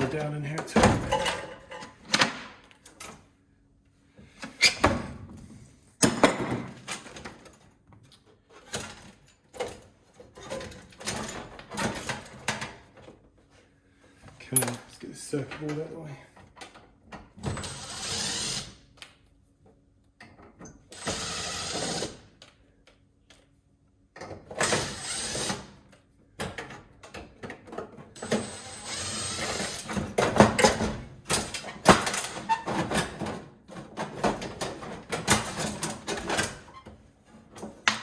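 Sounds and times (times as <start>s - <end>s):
parts clicking and clattering: 14.4s - 17.0s
cordless drill bursts: 17.6s - 18.7s, 21.0s - 22.2s, 24.6s - 25.6s, 28.3s - 29.9s.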